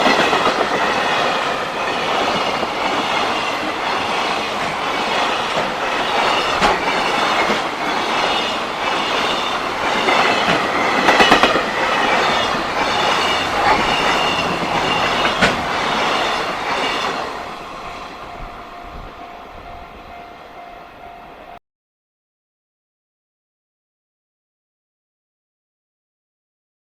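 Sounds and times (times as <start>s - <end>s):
wheels clacking over rail joints: 0.0s - 19.4s
train wagons rumbling past: 0.0s - 21.6s.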